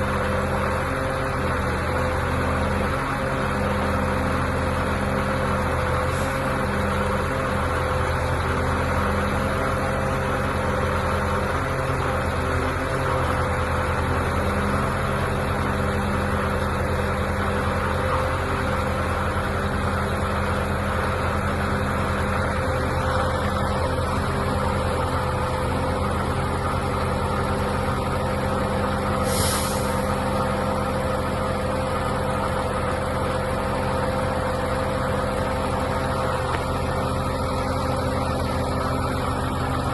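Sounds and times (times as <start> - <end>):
diesel truck engine running: 0.0 - 39.9
air hiss: 29.2 - 30.1.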